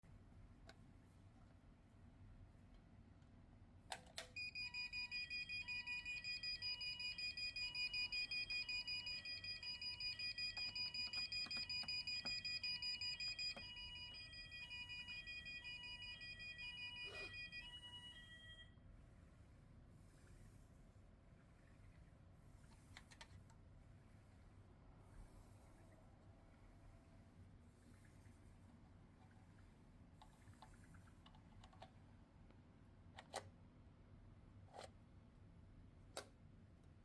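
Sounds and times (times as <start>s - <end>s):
rapidly pulsing high alarm tone: 4.4s - 18.8s
two-tone alarm warble: 4.4s - 18.8s.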